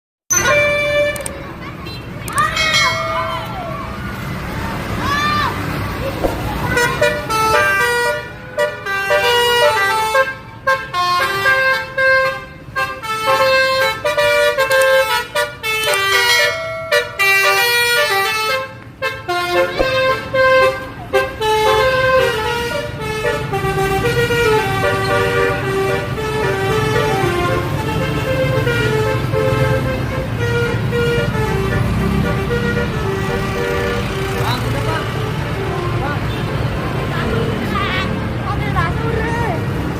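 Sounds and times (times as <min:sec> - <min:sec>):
multi-tone musical bus horn: 0:00.3 - 0:02.2, 0:06.7 - 0:38.3.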